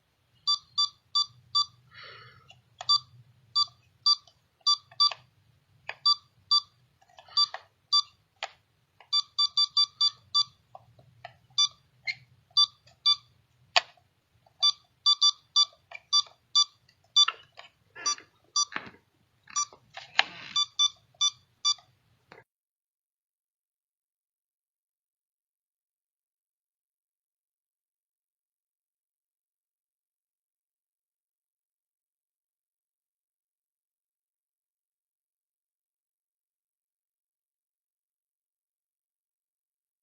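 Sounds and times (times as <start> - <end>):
electronic button beeps: 2.8 - 5.3.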